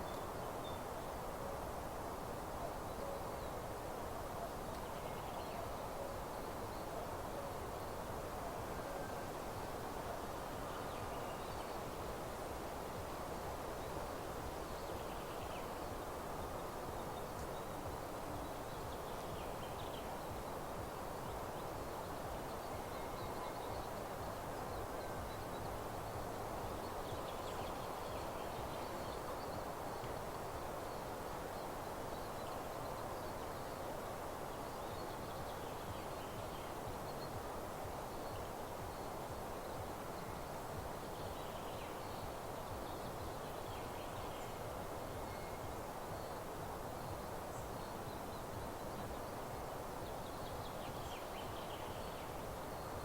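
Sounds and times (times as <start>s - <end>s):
faint songbird calls: 13.7s - 53.0s.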